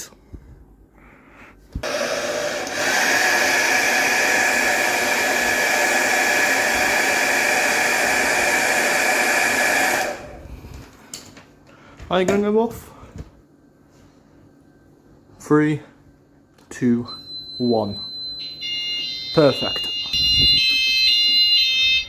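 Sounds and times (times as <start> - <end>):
hair dryer whirring: 1.8 - 10.8.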